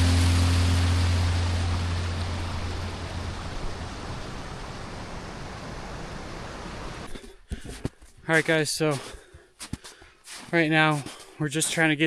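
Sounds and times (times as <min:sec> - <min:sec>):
song note: 0:00.0 - 0:03.3
rushing mountain water: 0:00.0 - 0:07.3.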